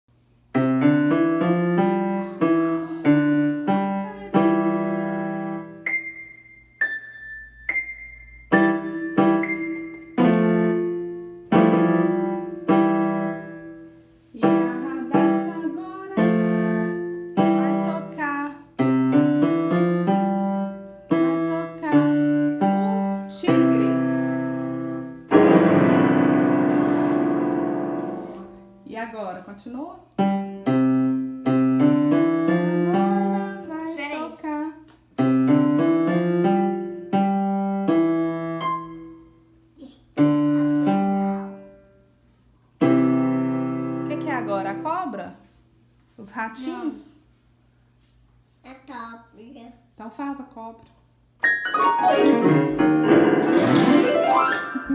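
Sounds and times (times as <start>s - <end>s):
piano chords: 0.1s - 29.4s, 30.1s - 34.4s, 35.1s - 39.5s, 40.2s - 41.9s, 42.8s - 45.2s, 51.4s - 54.9s.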